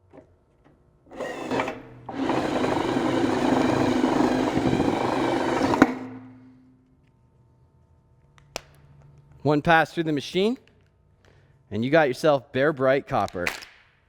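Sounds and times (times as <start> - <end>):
electric drill running: 1.2 - 6.5.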